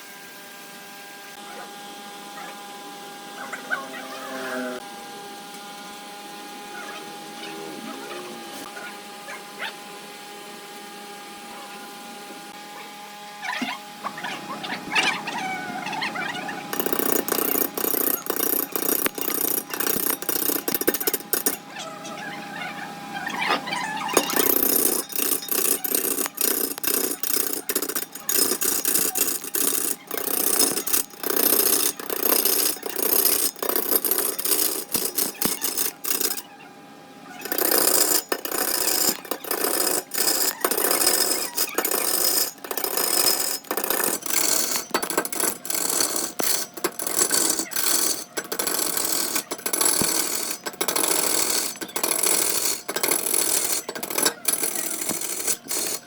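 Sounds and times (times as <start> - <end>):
turning tool scraping wood on lathe: 16.6 - 21.8, 23.4 - 36.4, 37.4 - 56.0.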